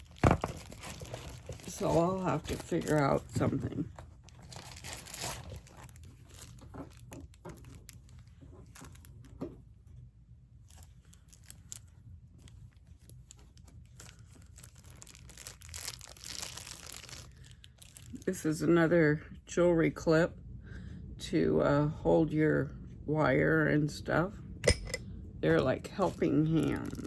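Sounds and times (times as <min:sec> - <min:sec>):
packaging rustling and crinkling: 0:00.0 - 0:09.7, 0:10.6 - 0:18.4, 0:25.6 - 0:27.0.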